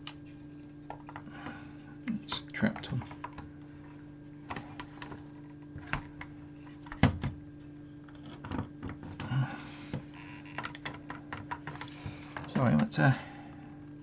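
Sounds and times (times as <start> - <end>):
steady low hum: 0.0 - 14.0
small parts clicking and knocking: 10.5 - 12.9.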